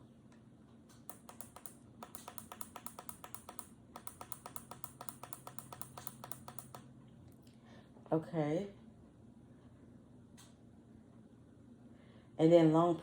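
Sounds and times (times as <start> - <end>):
alarm clock button ticks: 1.1 - 6.8.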